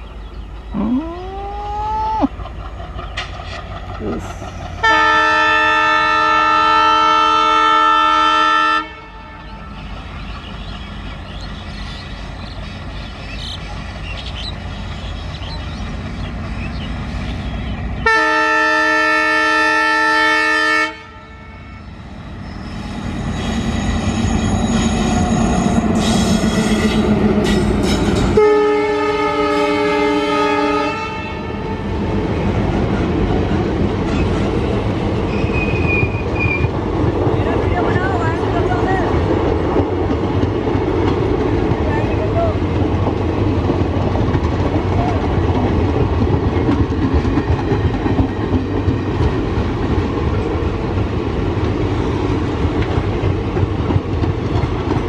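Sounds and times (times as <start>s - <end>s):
diesel locomotive rumble: 0.0s - 55.0s
locomotive horn blasts: 4.8s - 9.6s, 18.0s - 22.0s, 28.4s - 31.9s.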